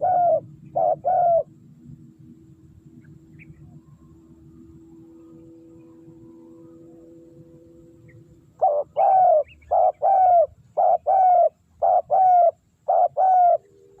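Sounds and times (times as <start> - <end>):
dove cooing: 0.0 - 1.5, 6.6 - 14.0.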